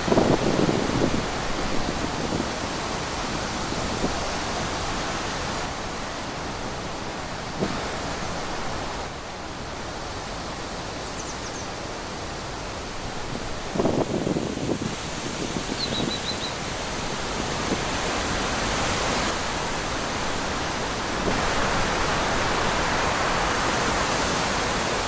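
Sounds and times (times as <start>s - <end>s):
wind rushing through trees: 0.0s - 25.0s
faint high chirp: 11.0s - 11.7s, 15.8s - 16.6s.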